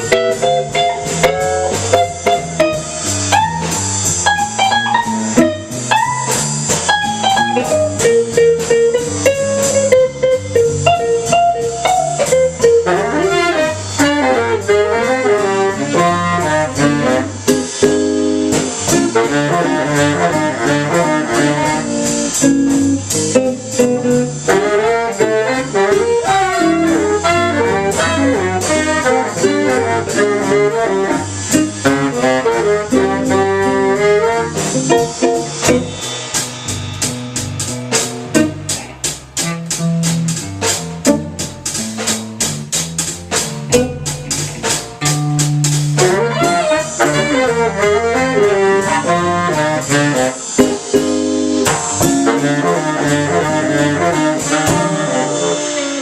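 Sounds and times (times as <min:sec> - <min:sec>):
steady cymbal beat: 0:00.0 - 0:56.0
walking bass: 0:00.0 - 0:56.0
horn soloing in quick runs: 0:46.0 - 0:50.6, 0:52.0 - 0:56.0.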